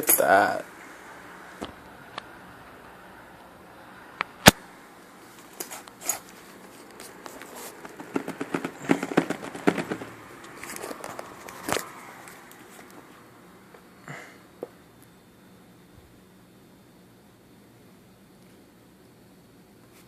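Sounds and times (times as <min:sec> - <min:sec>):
packaging crinkling: 0:05.6 - 0:11.9
packaging snapping: 0:07.0 - 0:11.9.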